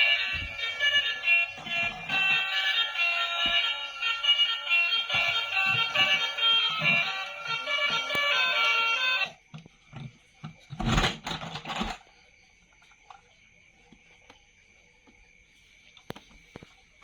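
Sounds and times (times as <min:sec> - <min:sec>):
background music: 0:00.0 - 0:09.3.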